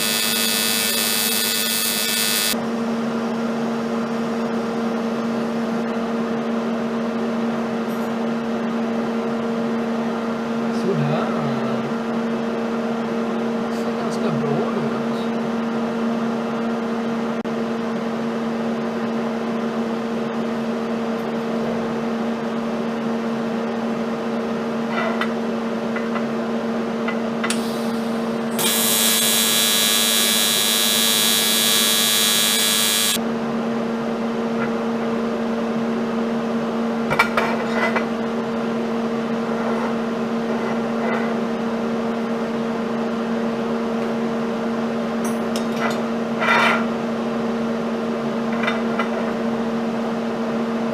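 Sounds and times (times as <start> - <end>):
welding arc buzzing: 0.0 - 2.6, 27.5 - 33.2
steady electrical hum: 0.0 - 5.9, 26.5 - 34.0.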